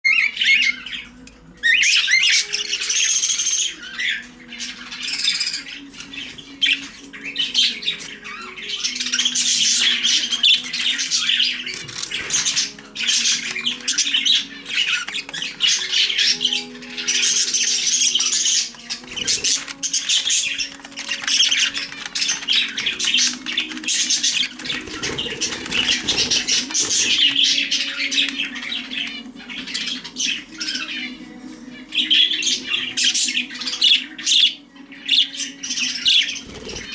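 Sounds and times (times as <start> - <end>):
budgerigar chattering and warbling: 7.7 - 31.1.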